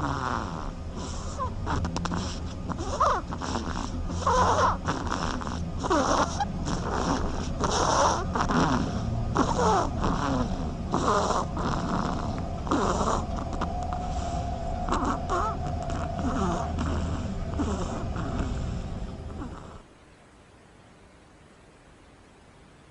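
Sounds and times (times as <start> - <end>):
ducks snoring: 0.0 - 19.9.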